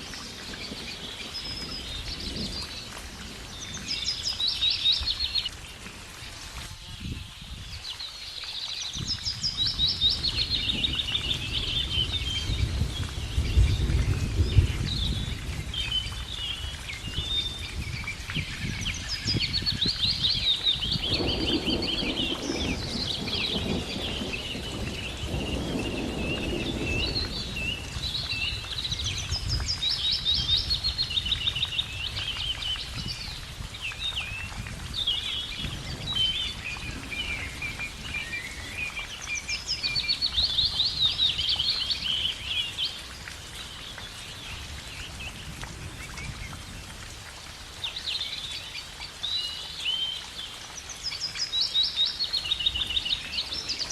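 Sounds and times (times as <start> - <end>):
birds chirping and singing: 8.8 - 45.5.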